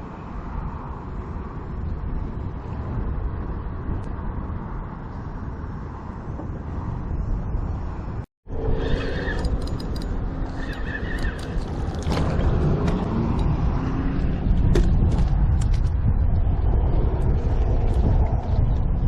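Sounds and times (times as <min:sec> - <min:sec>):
wind rumbling on microphone: 0:00.0 - 0:19.0
sharp clicks: 0:09.4 - 0:12.3.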